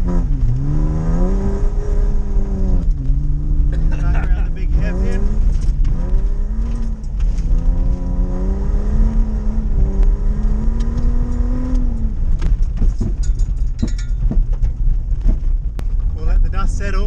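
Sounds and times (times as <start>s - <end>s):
car engine revving hard: 0.0s - 13.0s
car skidding on dirt: 0.0s - 13.2s
heavy low rumble: 0.0s - 17.0s
knocks and rattles: 10.8s - 16.2s.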